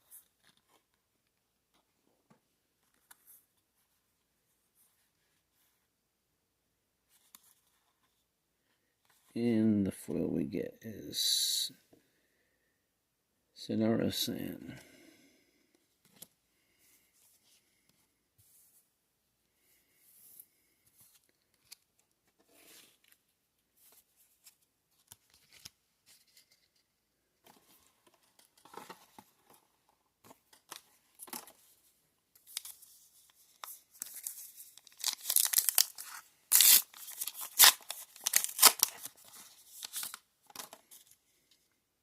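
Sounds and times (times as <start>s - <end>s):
wrapper ripping and crinkling: 34.0s - 40.2s.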